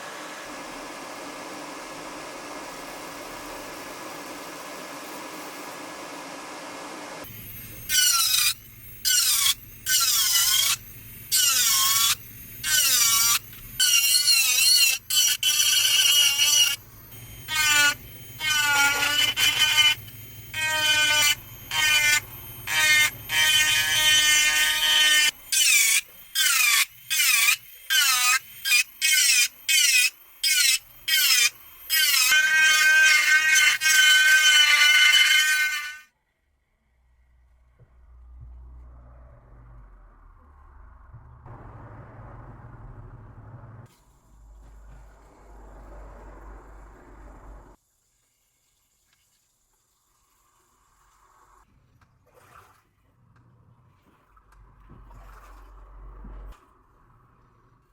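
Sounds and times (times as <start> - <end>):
small power tool whining: 7.2 - 36.1.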